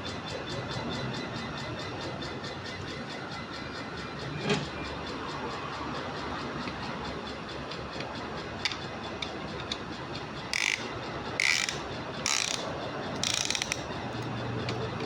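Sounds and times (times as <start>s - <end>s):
ratchet wrench clicking: 10.4s - 14.8s.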